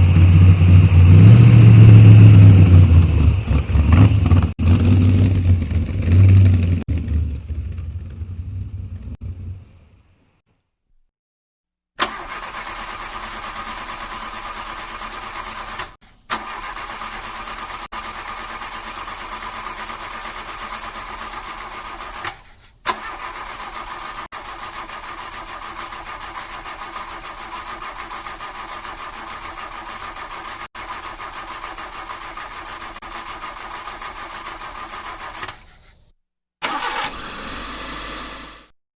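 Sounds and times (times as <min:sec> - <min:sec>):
car engine starting: 0:00.0 - 0:10.2, 0:12.0 - 0:35.7, 0:36.6 - 0:38.7
car engine idling: 0:12.0 - 0:35.6.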